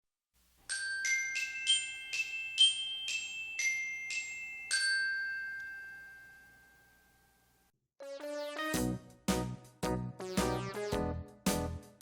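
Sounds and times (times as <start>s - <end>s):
bell-like mallet jingle: 0.7s - 7.1s.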